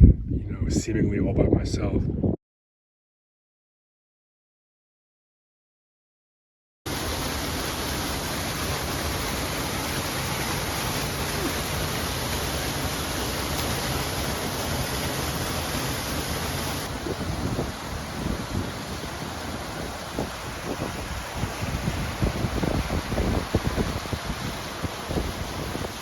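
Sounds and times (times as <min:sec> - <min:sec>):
wind buffeting microphone: 0:00.0 - 0:02.4, 0:14.3 - 0:26.0
flowing water: 0:06.9 - 0:26.0.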